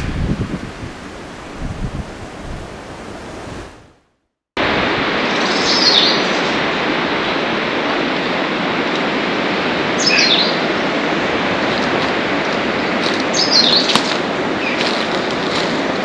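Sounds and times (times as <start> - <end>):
flowing water rushing: 0.0 - 4.0.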